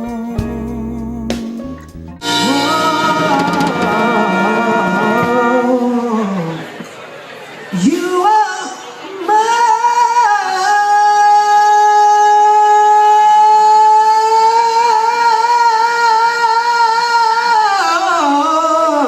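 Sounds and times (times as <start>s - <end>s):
person singing long high note: 2.2s - 6.7s.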